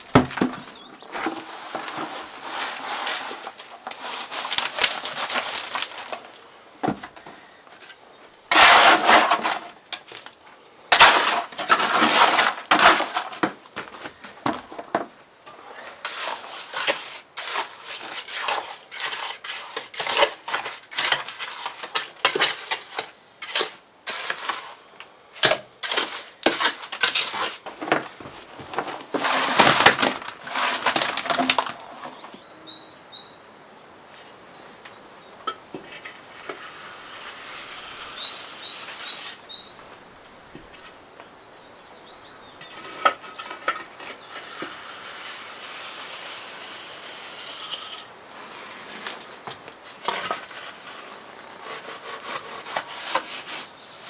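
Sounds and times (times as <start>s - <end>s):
clattering and scraping knocks: 0.0s - 7.4s
bird chirping: 0.5s - 1.2s, 31.9s - 33.6s, 38.1s - 44.4s.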